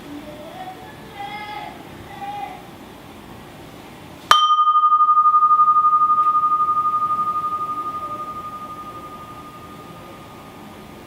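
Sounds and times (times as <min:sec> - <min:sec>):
struck metal vessel ringing: 0:04.3 - 0:11.0.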